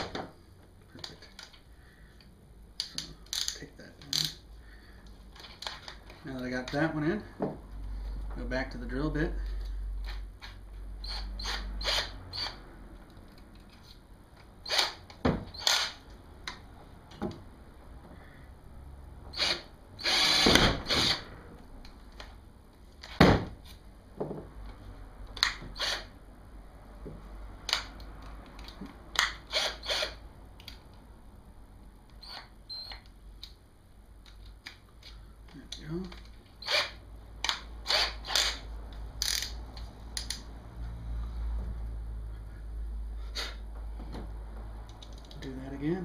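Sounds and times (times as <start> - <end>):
power drill drilling plastic: 19.4 - 21.2, 29.5 - 30.2, 36.6 - 37.0, 37.9 - 38.6.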